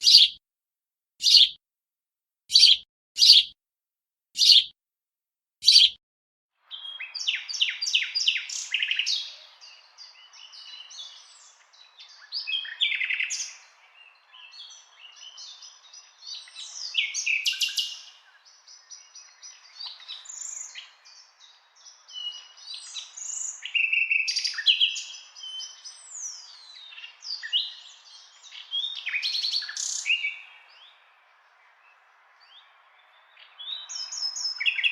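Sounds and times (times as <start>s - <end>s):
short bird chirps: 0.0s - 0.4s, 1.2s - 1.6s, 2.5s - 3.6s, 4.4s - 4.7s, 5.6s - 6.0s
songbirds singing and chattering: 0.0s - 0.4s, 1.2s - 1.6s, 2.5s - 3.6s, 4.4s - 4.7s, 5.6s - 6.0s, 6.6s - 34.9s.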